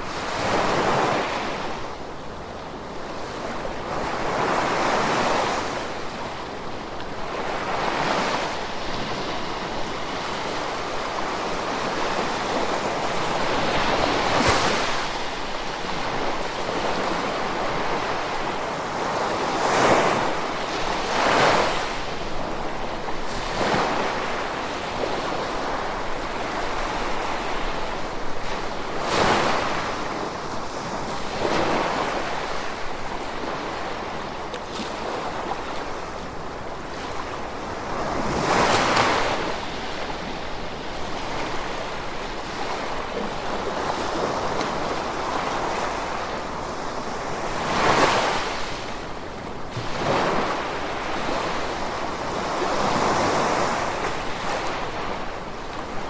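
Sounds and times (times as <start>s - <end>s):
ocean waves washing ashore: 0.0s - 56.0s.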